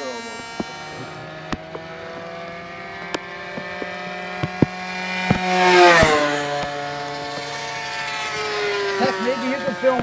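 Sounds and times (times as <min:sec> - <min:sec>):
model airplane engine passing: 0:00.0 - 0:10.0.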